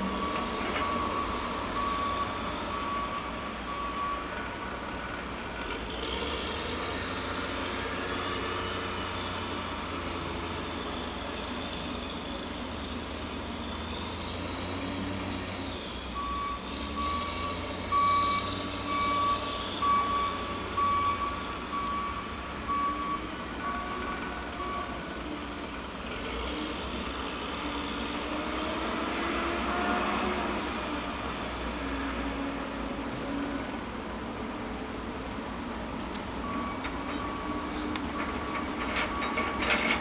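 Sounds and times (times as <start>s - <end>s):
backup alarm beeping: 16.2s - 24.9s.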